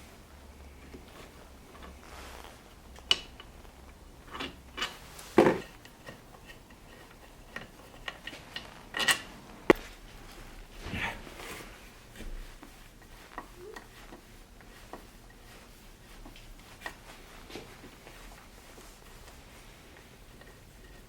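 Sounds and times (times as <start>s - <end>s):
hand tools and metal parts clinking: 4.2s - 9.9s.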